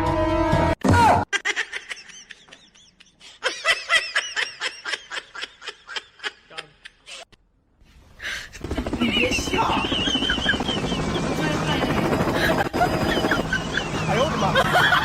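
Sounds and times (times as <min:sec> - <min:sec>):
person giggling: 0:12.2 - 0:15.0.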